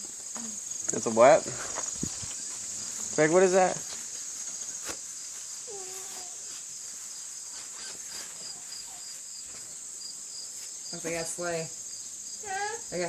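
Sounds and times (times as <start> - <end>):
crickets trilling: 0.0 - 13.0
faint animal call: 5.7 - 6.6.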